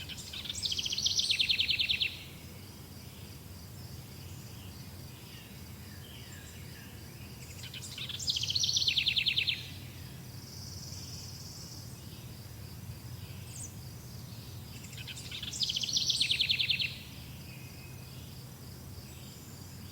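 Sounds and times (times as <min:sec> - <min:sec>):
songbird trilled song: 0:00.0 - 0:02.4, 0:04.3 - 0:12.3, 0:13.1 - 0:18.4
crickets droning: 0:00.0 - 0:19.9.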